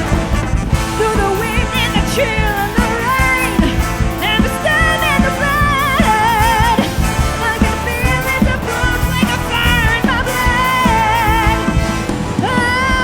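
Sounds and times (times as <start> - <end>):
pop-rock band playing: 0.0 - 13.0
woman singing with vibrato: 0.0 - 13.0.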